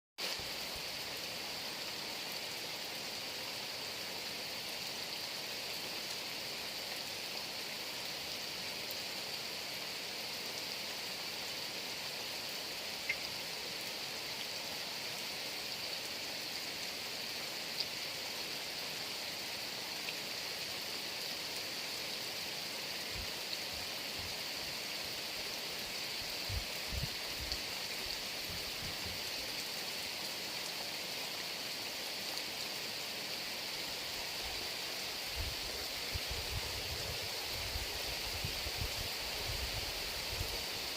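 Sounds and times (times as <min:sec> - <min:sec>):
heavy rain: 0:00.2 - 0:40.9
sharp drips: 0:13.0 - 0:13.3.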